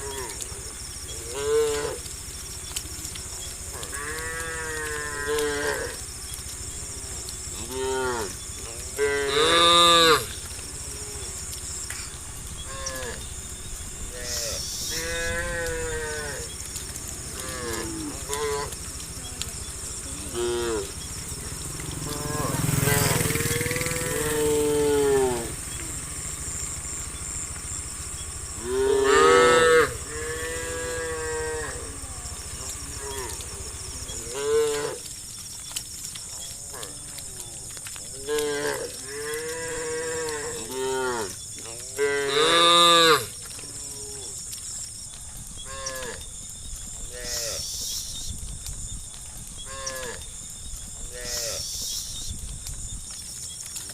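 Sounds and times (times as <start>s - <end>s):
cows mooing: 0.0s - 2.4s, 3.4s - 26.3s, 28.5s - 35.2s, 36.4s - 44.6s, 45.6s - 46.3s, 47.0s - 47.7s, 49.6s - 50.3s, 51.0s - 51.7s.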